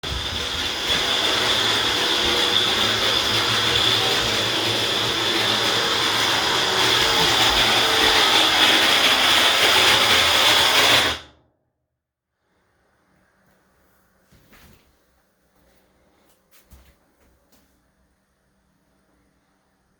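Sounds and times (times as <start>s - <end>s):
washing machine whirring and whining: 0.0s - 11.3s.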